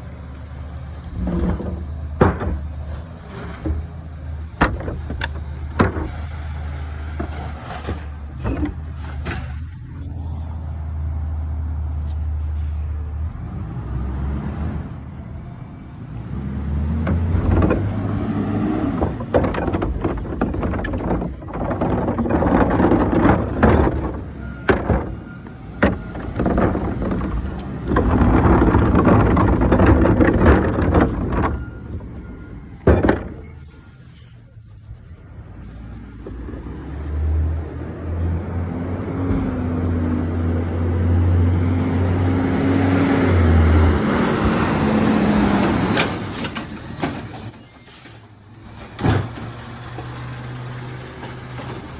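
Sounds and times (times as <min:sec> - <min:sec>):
garbage truck engine running: 0:00.0 - 0:13.4, 0:15.0 - 0:47.5
bin clanking and knocking: 0:01.1 - 0:06.4, 0:07.1 - 0:09.7, 0:17.0 - 0:33.6.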